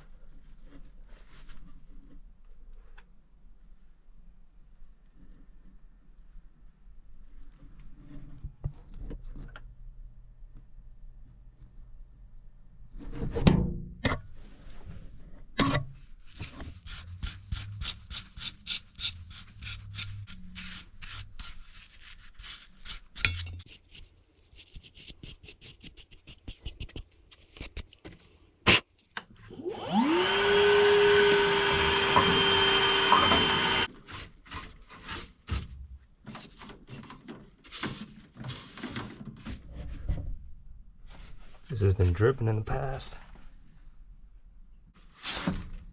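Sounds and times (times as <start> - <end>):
motor whining: 29.5 - 33.9.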